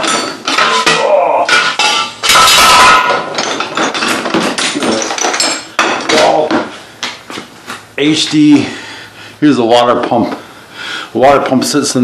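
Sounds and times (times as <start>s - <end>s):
metal parts knocking and clanking: 0.0s - 6.6s.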